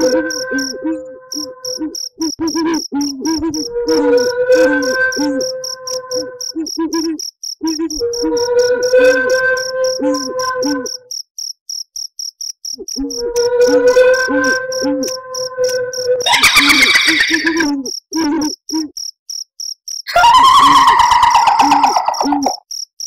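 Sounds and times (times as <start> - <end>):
eerie held tone: 0.0 - 1.9, 13.0 - 17.6
owl hooting: 0.0 - 10.9, 13.0 - 18.9, 20.1 - 22.6
crickets chirping: 0.0 - 23.0
woman cackling laugh: 16.3 - 17.6.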